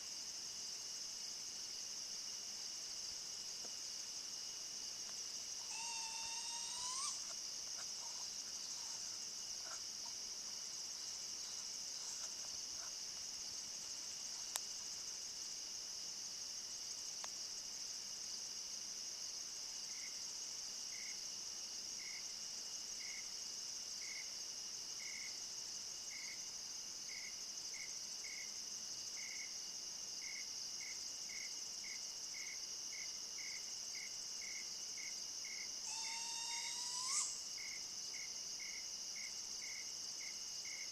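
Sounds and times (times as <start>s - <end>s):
insect chorus trilling: 2.5s - 40.9s
animal rising call: 5.7s - 7.3s.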